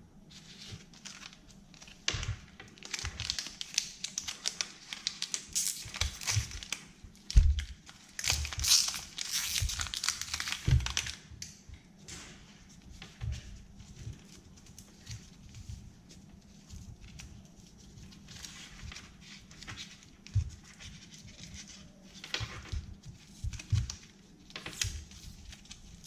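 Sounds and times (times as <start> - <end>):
candy wrapper crinkling: 1.0 - 6.9, 7.6 - 11.2.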